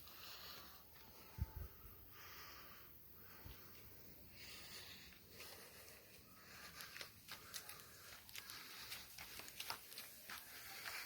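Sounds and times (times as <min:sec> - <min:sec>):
faint footsteps: 0:03.2 - 0:11.0.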